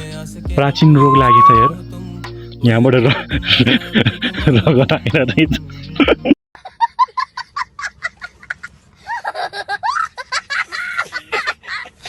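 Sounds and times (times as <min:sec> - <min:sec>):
high-pitched laughter: 0:06.0 - 0:12.0.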